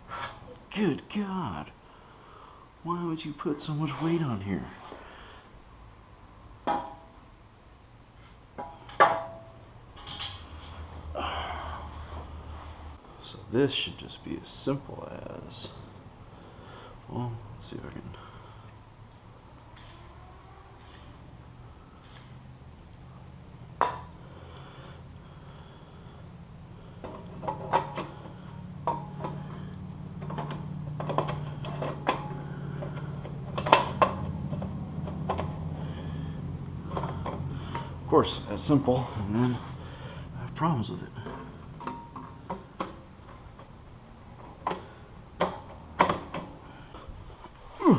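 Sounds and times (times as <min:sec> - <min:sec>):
steady low hum: 0:00.0 - 0:47.9
metallic clinks and knocks: 0:08.5 - 0:10.9, 0:27.0 - 0:35.8
metal parts clanking: 0:08.6 - 0:10.8.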